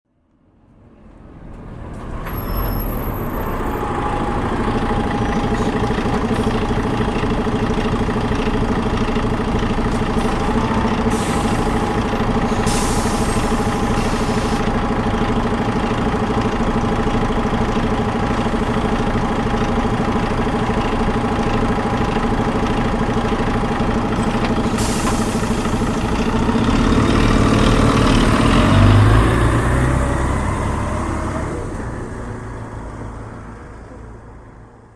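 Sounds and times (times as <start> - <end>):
bus engine idling: 0.2 - 34.9
bus engine revving: 0.8 - 34.2
air brake hiss: 11.1 - 14.7, 24.7 - 26.0.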